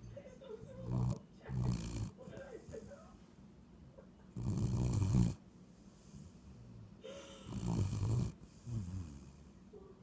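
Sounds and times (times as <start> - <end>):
person snoring: 4.4 - 5.4, 7.4 - 9.4.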